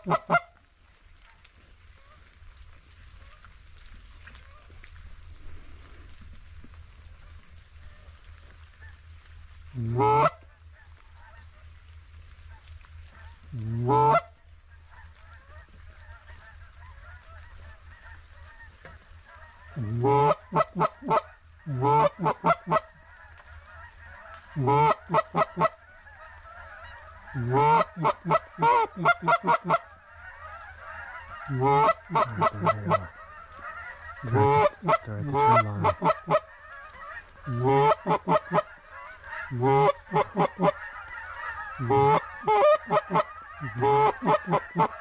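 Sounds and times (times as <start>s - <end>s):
geese honking: 0.0s - 0.6s, 9.8s - 45.0s
distant goose flock chatter: 0.0s - 6.3s, 7.0s - 45.0s.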